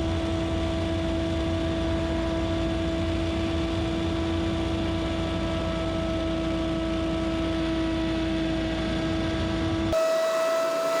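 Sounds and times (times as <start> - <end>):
leaf blower running: 10.0 - 11.0.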